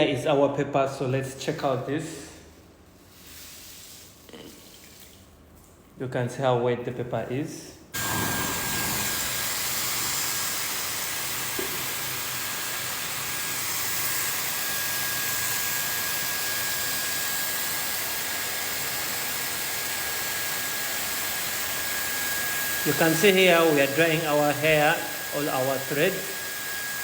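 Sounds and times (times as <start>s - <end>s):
hair dryer running: 8.0s - 27.0s.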